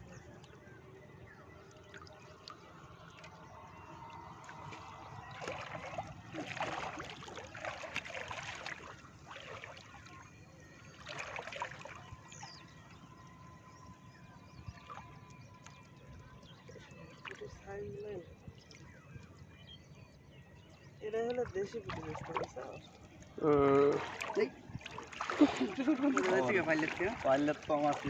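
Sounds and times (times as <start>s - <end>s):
water splashing and dripping: 4.1s - 10.2s, 10.9s - 12.5s, 21.2s - 28.0s.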